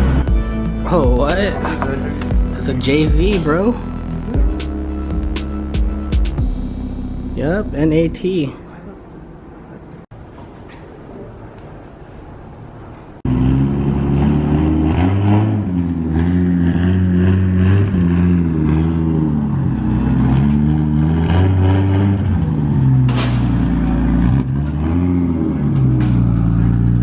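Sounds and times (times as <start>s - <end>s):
car engine revving: 13.2s - 27.0s.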